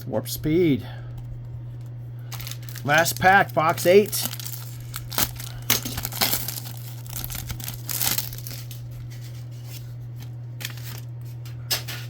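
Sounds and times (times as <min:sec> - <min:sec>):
low electrical hum: 0:00.0 - 0:12.0
card pack wrapper tearing: 0:02.3 - 0:09.4, 0:10.6 - 0:11.1.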